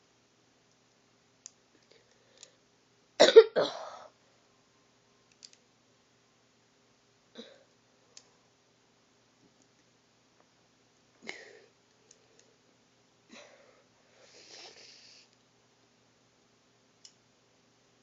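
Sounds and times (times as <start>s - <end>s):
person coughing: 3.2s - 4.1s, 11.2s - 11.7s.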